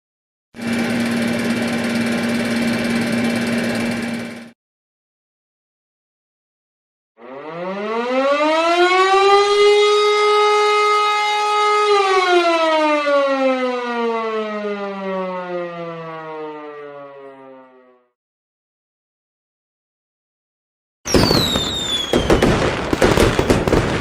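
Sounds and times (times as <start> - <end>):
air-raid siren wailing: 7.2 - 18.2, 21.1 - 24.0.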